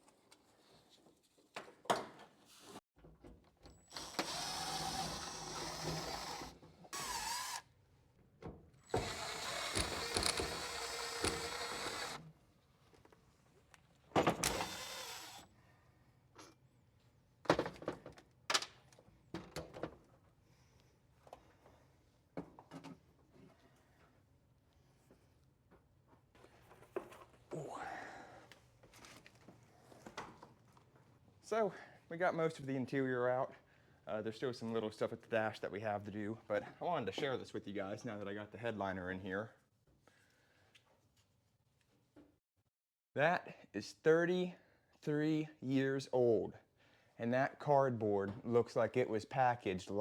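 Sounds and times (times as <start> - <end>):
small electric motor running: 4.0 - 7.6, 8.9 - 12.2, 14.5 - 15.4.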